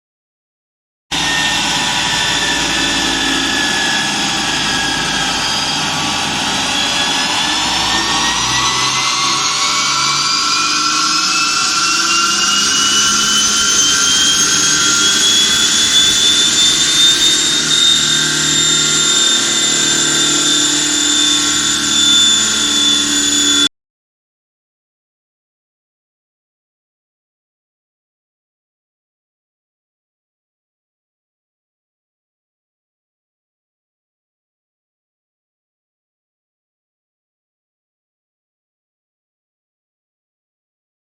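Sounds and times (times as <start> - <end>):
high turbo whine: 1.1 - 23.7
diesel engine accelerating hard: 1.2 - 23.7.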